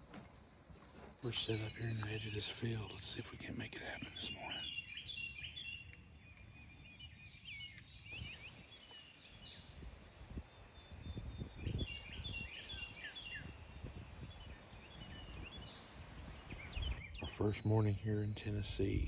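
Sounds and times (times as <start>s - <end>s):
songbirds chirping: 0.0s - 19.0s
wind gusting on microphone: 9.5s - 19.0s.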